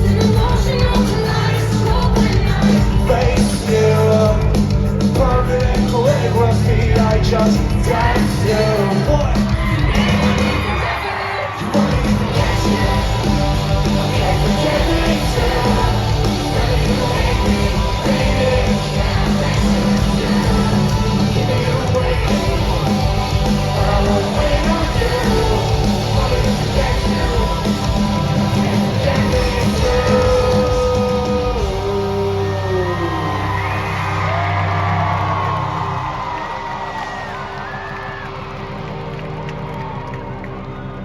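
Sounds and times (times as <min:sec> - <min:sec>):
person singing: 0:00.0 - 0:34.7
live rock band: 0:00.0 - 0:40.0.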